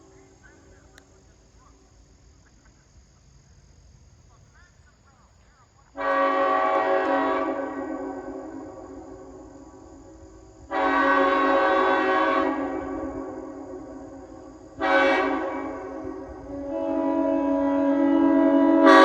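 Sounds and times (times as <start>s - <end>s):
train air horn blasts: 6.0s - 19.0s.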